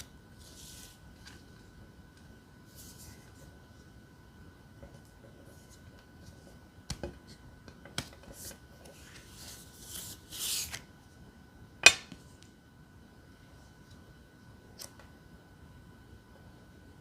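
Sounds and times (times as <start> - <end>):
cards sliding and rubbing: 0.0 - 1.7, 2.7 - 3.6, 8.0 - 10.9.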